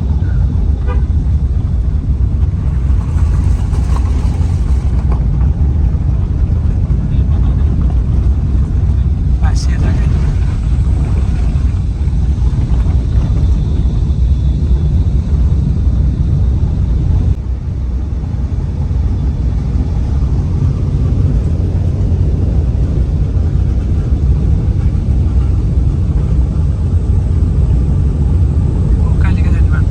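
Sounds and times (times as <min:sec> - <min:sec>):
vehicle rumbling along road: 0:00.0 - 0:29.9.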